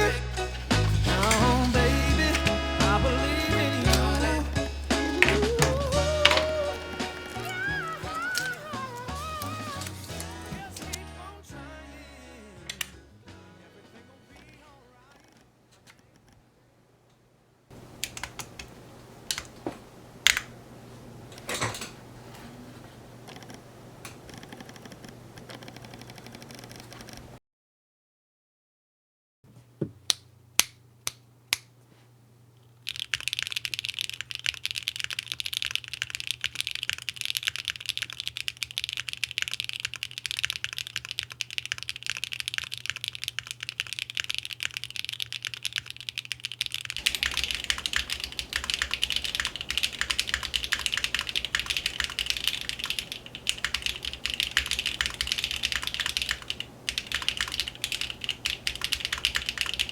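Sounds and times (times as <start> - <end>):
mechanical keyboard typing: 3.6 - 10.0, 17.8 - 18.7, 32.8 - 59.9
steady low hum: 29.5 - 59.9.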